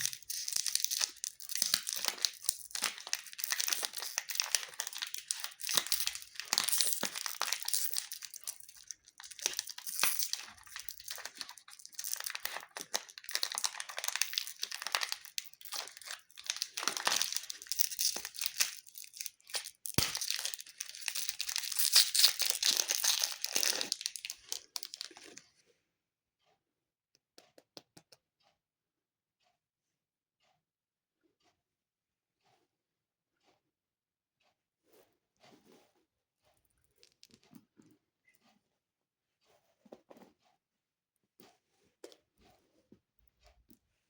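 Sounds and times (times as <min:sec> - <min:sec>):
plastic wrappers crinkling: 0:00.0 - 0:25.4.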